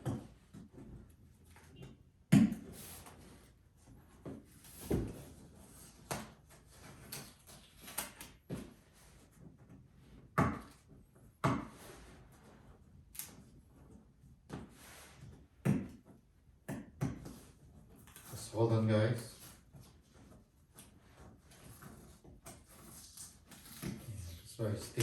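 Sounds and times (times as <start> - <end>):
cardboard box knocks and scrapes: 4.2 - 6.2.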